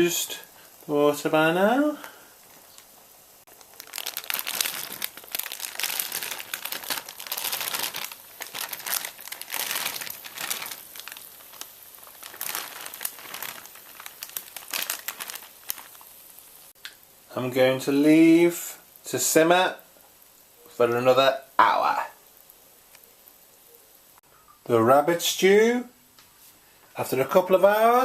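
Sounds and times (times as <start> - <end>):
plastic packet crinkling: 1.9 - 16.5.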